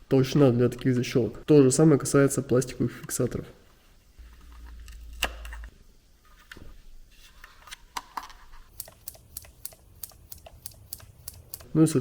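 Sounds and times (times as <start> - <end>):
plastic parts clicking and tapping: 7.9 - 11.7.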